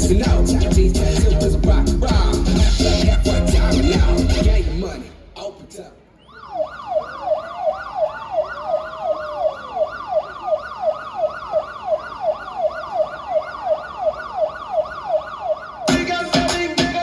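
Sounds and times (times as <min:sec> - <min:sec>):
electronic siren yelp: 0:06.2 - 0:16.4
siren wail: 0:06.2 - 0:16.4.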